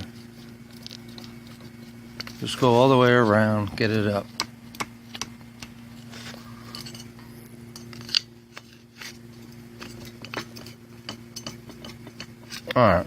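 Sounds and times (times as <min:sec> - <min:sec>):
tools and metal parts clinking: 0:06.6 - 0:08.8, 0:09.5 - 0:13.0.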